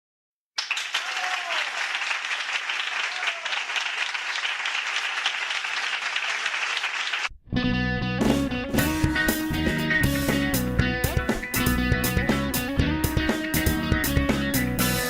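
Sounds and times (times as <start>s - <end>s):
audience applauding: 0.6s - 7.3s
song with guitar: 7.5s - 15.0s.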